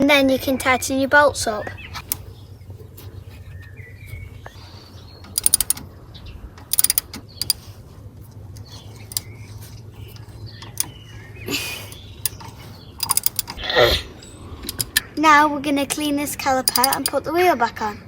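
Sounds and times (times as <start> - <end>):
ratchet wrench clicking: 5.2 - 5.8, 6.6 - 7.7, 8.6 - 9.4, 10.0 - 11.0, 11.9 - 13.6, 14.6 - 15.0, 16.6 - 17.2.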